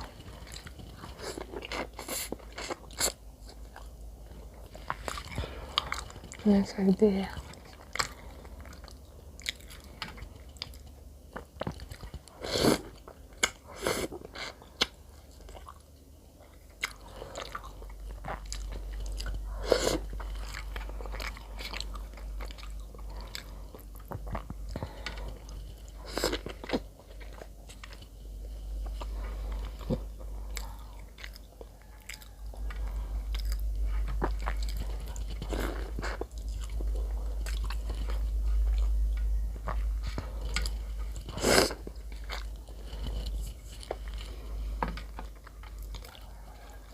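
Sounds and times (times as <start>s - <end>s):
biting and chewing bread: 0.0s - 6.4s, 7.0s - 46.9s
low hum: 14.6s - 46.9s.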